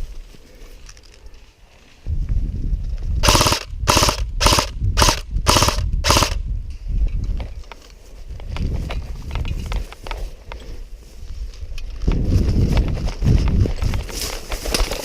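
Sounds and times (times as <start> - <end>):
airsoft gun full-auto bursts: 3.2 - 6.4.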